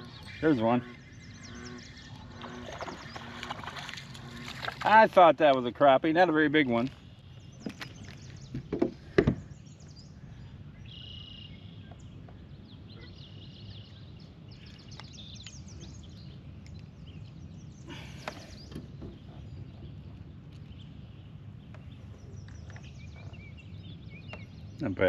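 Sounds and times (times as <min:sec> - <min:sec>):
small birds chirping: 0:00.0 - 0:05.6, 0:06.5 - 0:25.0.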